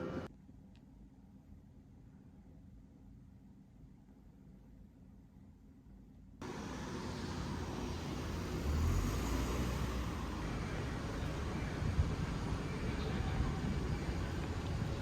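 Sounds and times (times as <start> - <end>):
car traffic rumbling: 0.0 - 0.3, 6.4 - 15.0.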